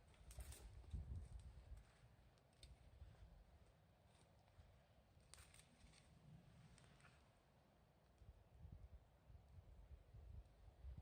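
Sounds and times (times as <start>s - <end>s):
faint wood fire crackles: 0.0s - 8.3s.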